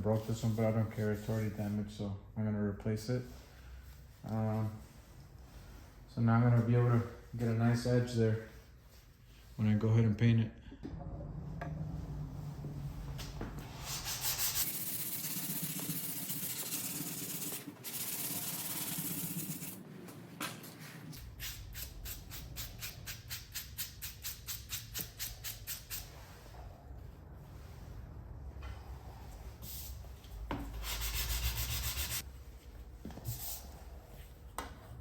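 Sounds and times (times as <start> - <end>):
sandpaper rubbing: 13.8 - 19.8, 30.8 - 32.3.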